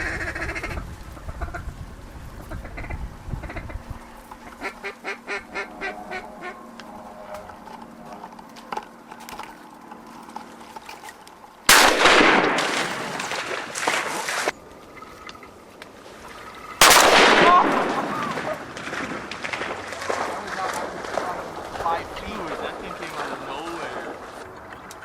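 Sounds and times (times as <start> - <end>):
duck quacking: 0.0 - 1.7, 4.4 - 8.3.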